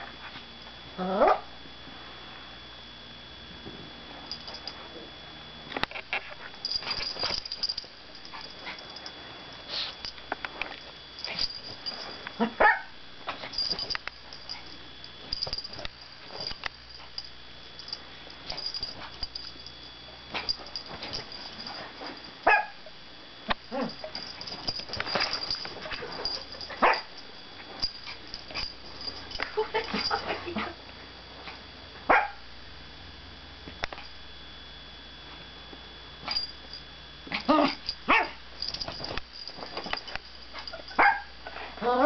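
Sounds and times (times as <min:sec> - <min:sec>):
dog barking and growling: 0:01.0 - 0:01.5, 0:12.4 - 0:12.9, 0:23.7 - 0:24.2, 0:37.3 - 0:38.4.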